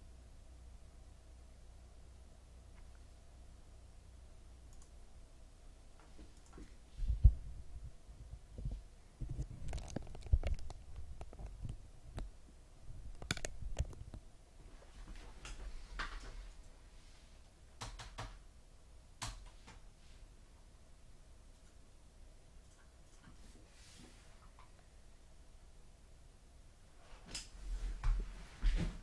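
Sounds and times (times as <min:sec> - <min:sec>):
microphone handling thumps: 0:07.0 - 0:12.3.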